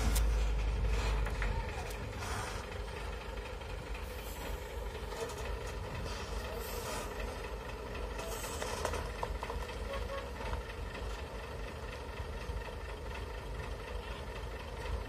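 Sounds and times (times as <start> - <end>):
heavy truck engine rumbling: 0.0 - 15.0.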